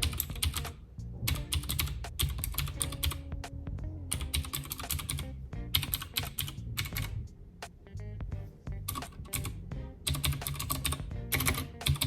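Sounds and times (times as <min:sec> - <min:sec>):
clicky keyboard typing: 0:00.0 - 0:03.2, 0:04.1 - 0:07.1, 0:08.9 - 0:12.0.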